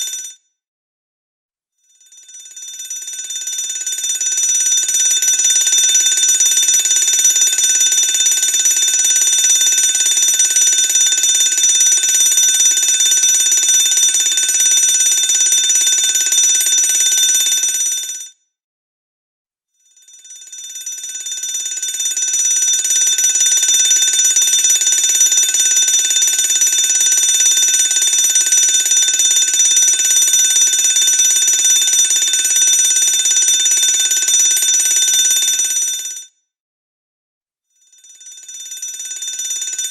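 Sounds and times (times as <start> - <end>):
fire alarm bell ringing: 4.8 - 18.2, 22.8 - 36.0.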